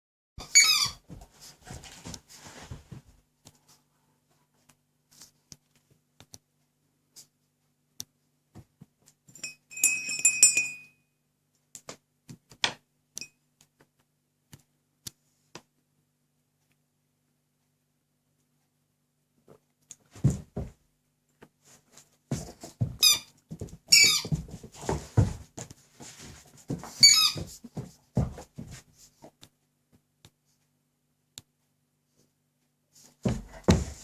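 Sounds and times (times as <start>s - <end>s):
rubber squeaky toy squeaking: 0.4s - 1.0s, 23.0s - 23.3s, 23.9s - 24.4s, 27.0s - 27.5s.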